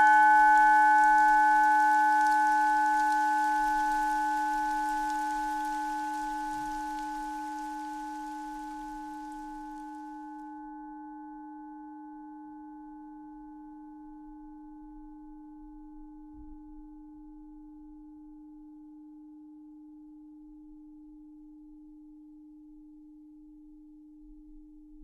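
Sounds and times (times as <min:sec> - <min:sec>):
singing bowl ringing: 0:00.0 - 0:14.2.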